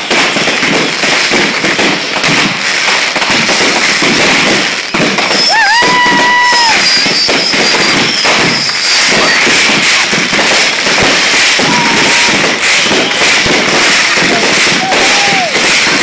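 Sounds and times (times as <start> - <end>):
fireworks banging and crackling: 0.0 - 16.0
high thin firework whistle: 5.2 - 16.0.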